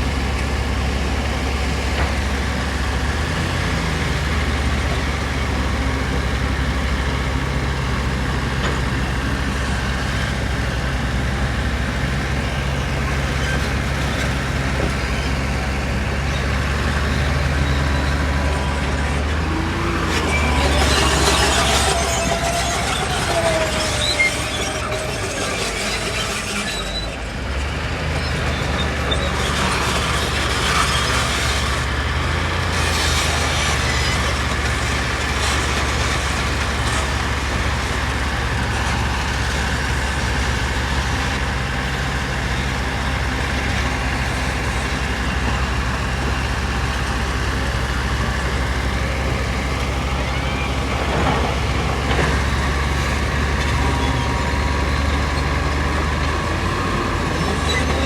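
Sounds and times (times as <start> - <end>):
diesel machinery engine running: 0.0 - 58.0
falling squeal: 16.2 - 27.4, 28.0 - 31.8, 49.0 - 58.0.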